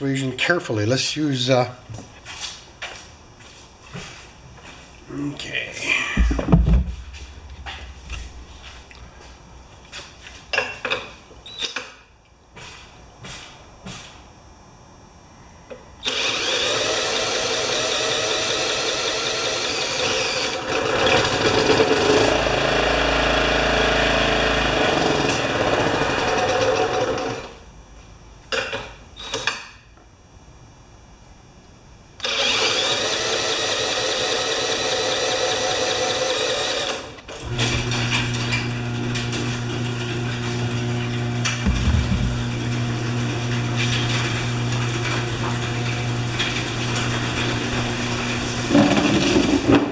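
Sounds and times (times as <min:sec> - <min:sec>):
engine being cranked by drill: 0:16.0 - 0:27.6, 0:32.2 - 0:49.8.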